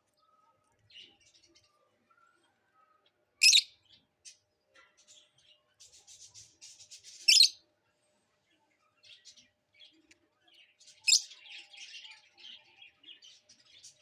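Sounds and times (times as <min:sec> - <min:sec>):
parrots chattering chirps: 0:03.4 - 0:03.7, 0:07.2 - 0:07.6, 0:11.1 - 0:11.3
parrots shrill calls: 0:03.4 - 0:03.7, 0:07.3 - 0:07.5.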